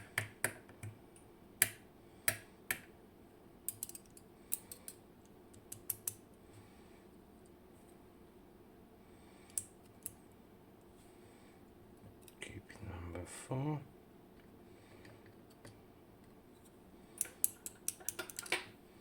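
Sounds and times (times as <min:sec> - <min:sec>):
small metal clicks and taps: 0:03.7 - 0:06.2, 0:17.2 - 0:18.7.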